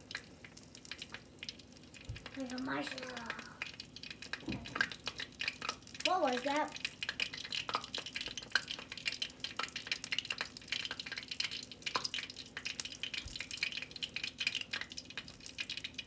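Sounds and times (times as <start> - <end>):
food frying in oil: 0.0 - 16.0.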